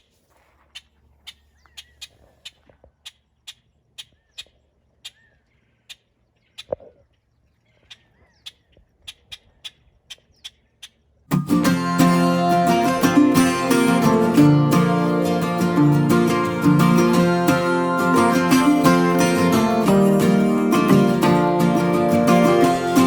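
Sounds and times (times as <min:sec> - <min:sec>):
short bird calls: 0:00.0 - 0:11.1.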